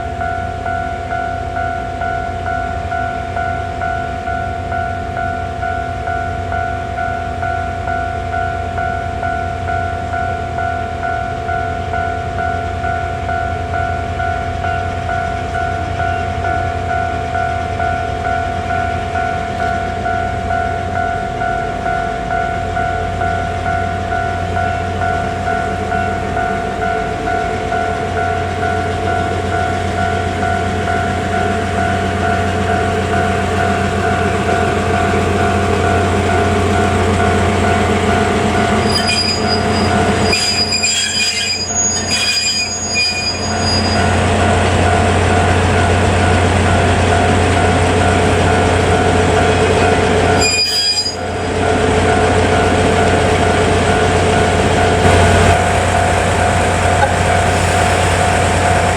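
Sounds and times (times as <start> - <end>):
level crossing warning bell: 0.0 - 57.5
diesel locomotive engine hum: 0.0 - 58.9
train wheels squealing: 38.1 - 45.1, 49.0 - 51.4.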